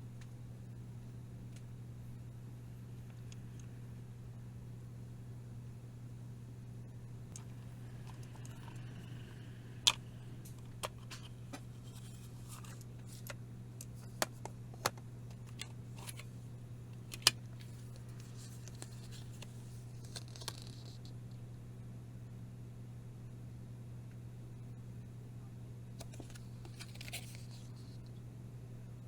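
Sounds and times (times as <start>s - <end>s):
steady low hum: 0.0s - 29.0s
plastic cases clicking: 10.6s - 16.3s, 17.0s - 18.0s.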